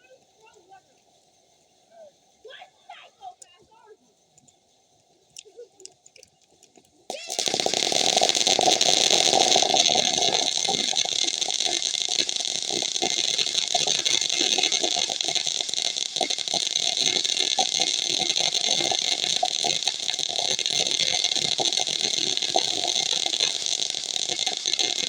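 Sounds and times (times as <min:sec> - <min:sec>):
firework crackling hiss: 0:07.1 - 0:25.0.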